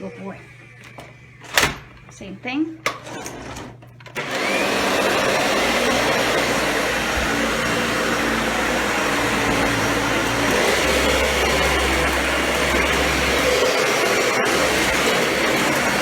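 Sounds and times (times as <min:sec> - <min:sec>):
vacuum cleaner motor running: 0:04.1 - 0:16.0.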